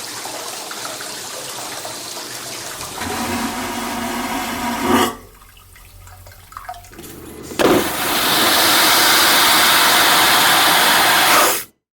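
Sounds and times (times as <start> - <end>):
toilet flushing: 0.0 - 11.7.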